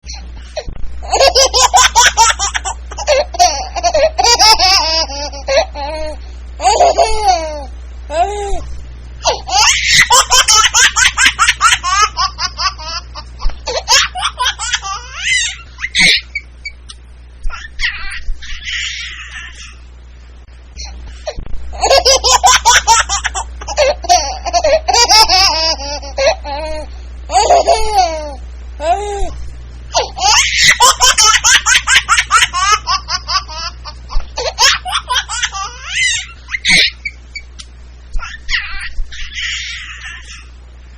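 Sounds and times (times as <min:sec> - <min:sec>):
baby laughing: 0:01.0 - 0:08.6, 0:09.2 - 0:16.4, 0:17.5 - 0:19.8, 0:20.8 - 0:29.3, 0:29.9 - 0:37.2, 0:38.2 - 0:40.5
baby squealing: 0:17.5 - 0:19.8, 0:35.5 - 0:37.2, 0:38.2 - 0:40.5.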